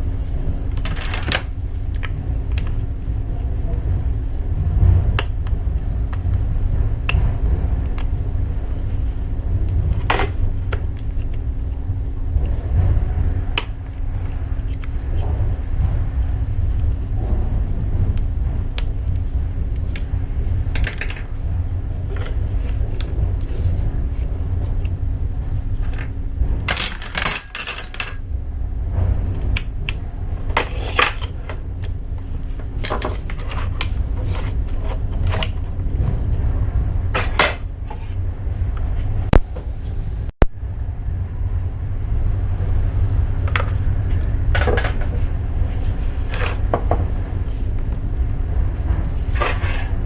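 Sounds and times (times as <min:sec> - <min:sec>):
steady low hum: 0:00.0 - 0:50.0
metal tools clinking: 0:26.7 - 0:28.2.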